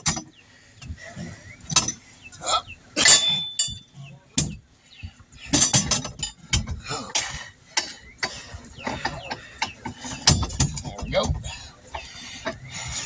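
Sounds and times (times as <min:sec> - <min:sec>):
metal wheel rim clinking: 0:03.0 - 0:04.6, 0:05.3 - 0:11.6.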